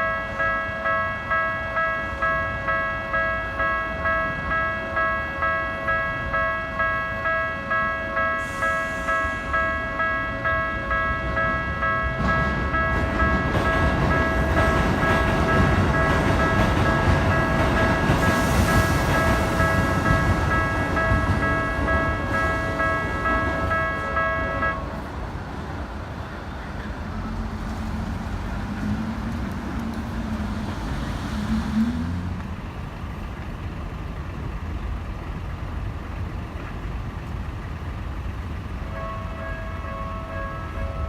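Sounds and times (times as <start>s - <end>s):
level-crossing bell clanging: 0.0s - 25.0s, 38.8s - 41.0s
road traffic rumble: 0.0s - 41.0s.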